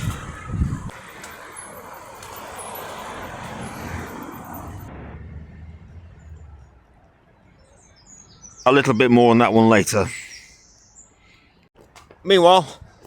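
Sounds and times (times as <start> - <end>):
car passing: 0.0 - 8.6
faint bird chirps: 7.3 - 11.6.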